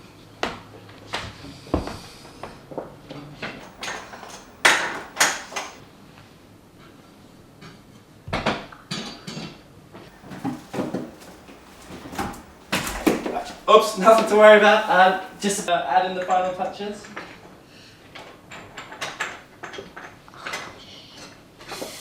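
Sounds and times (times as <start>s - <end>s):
dishes and utensils clattering: 3.6s - 5.8s, 10.1s - 15.7s.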